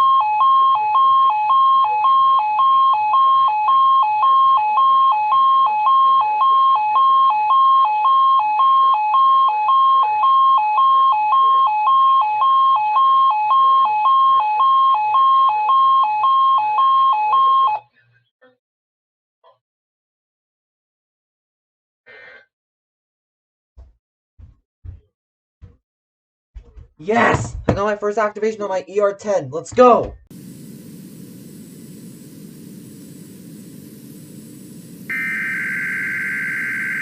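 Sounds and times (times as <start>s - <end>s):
two-tone alarm warble: 30.6s - 37.0s.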